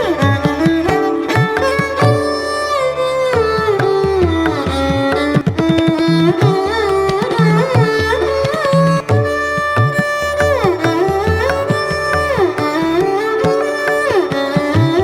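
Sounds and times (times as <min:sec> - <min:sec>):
sliding melody instrument: 0:00.0 - 0:15.0.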